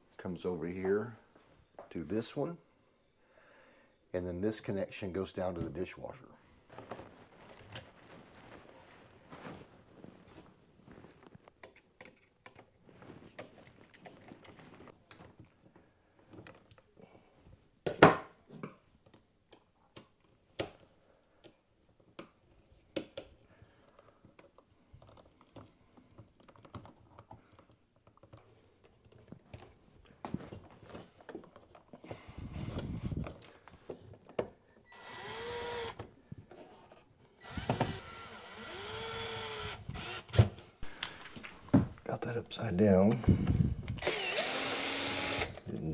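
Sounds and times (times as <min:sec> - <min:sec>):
power drill driving screws: 0:34.9 - 0:36.0, 0:37.4 - 0:41.3, 0:43.9 - 0:45.6.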